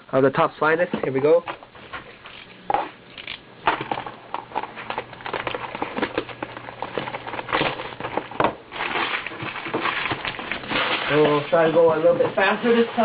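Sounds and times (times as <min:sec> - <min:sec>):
packaging crackling and crinkling: 0:01.3 - 0:13.0
packaging ripping: 0:03.2 - 0:11.7.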